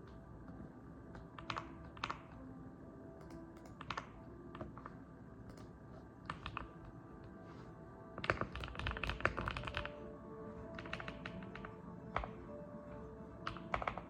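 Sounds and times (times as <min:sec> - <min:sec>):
faint background music: 0:00.0 - 0:14.0
mechanical keyboard clicks: 0:01.1 - 0:02.4, 0:03.2 - 0:06.8, 0:08.2 - 0:10.0, 0:10.8 - 0:12.4, 0:13.4 - 0:14.0.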